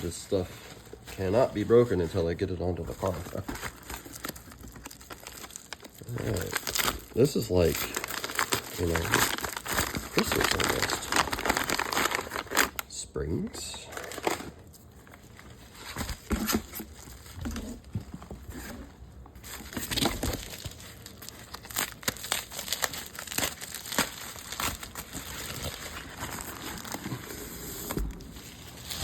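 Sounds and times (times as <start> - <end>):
plastic packaging crinkling: 0.0 - 29.0.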